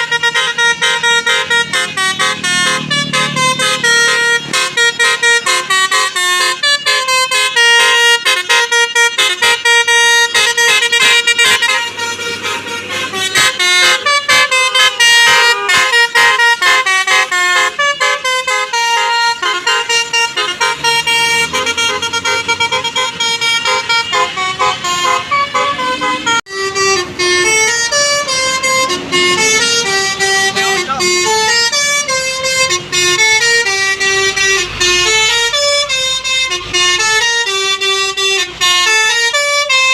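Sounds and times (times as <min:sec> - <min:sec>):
bus musical horn toots: 0:00.0 - 0:39.9.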